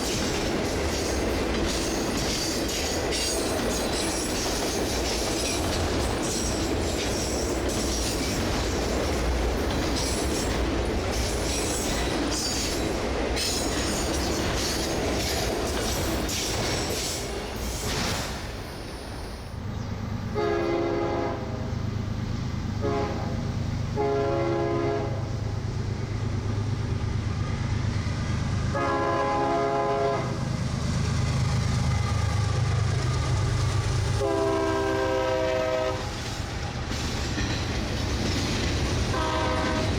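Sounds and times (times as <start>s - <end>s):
train wheels clickety-clack: 0.0s - 19.7s, 30.2s - 39.9s
diesel locomotive engine rumble: 0.0s - 39.9s
train air horn blasts: 20.3s - 21.7s, 22.8s - 25.4s, 28.7s - 30.4s, 34.2s - 36.2s, 39.1s - 39.9s.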